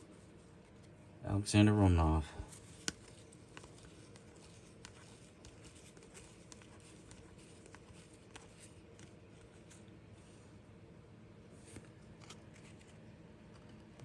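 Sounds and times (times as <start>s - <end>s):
cards flipped by hand: 2.5s - 10.0s, 11.6s - 14.0s.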